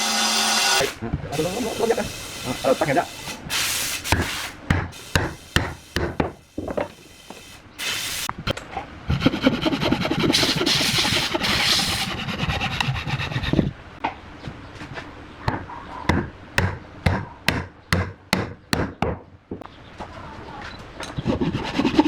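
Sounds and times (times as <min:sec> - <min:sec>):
hand scraping on wood: 0:09.6 - 0:13.7.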